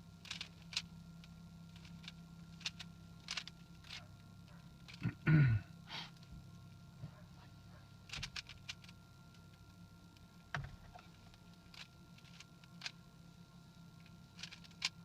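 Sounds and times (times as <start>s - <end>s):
speed cube clicking: 0.2s - 0.9s, 1.8s - 4.0s, 14.4s - 15.0s.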